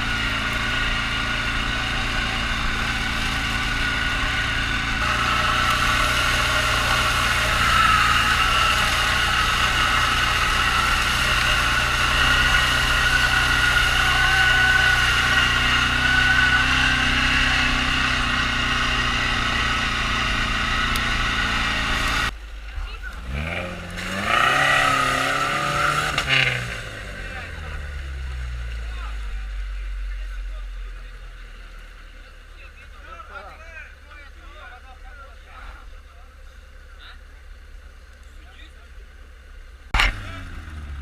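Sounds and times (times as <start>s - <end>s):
off-road vehicle engine running: 0.0s - 41.0s.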